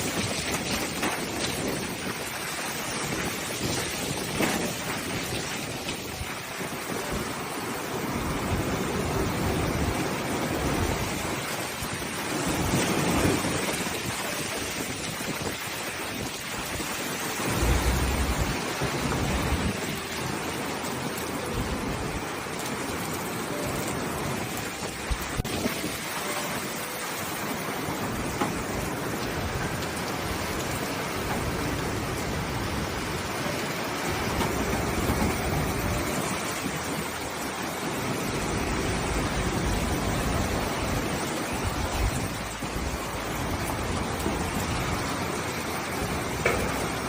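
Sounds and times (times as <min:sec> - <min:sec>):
driving water: 0:00.0 - 0:47.0
wind gusts rumbling on microphone: 0:00.0 - 0:47.0
wind rushing: 0:12.6 - 0:19.8.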